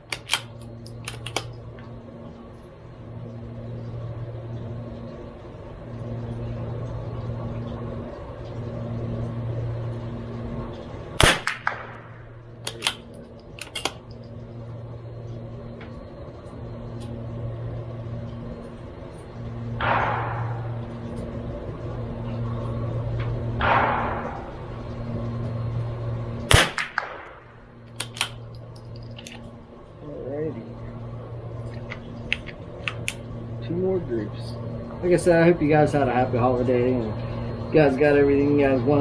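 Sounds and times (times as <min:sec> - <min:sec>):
steady low hum: 0:00.0 - 0:39.0
rifle shots: 0:11.2 - 0:13.0, 0:19.8 - 0:20.8, 0:26.5 - 0:28.4.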